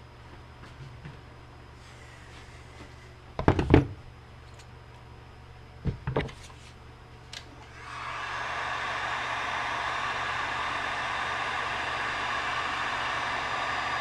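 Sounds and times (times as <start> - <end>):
heat gun blowing: 7.7 - 14.0.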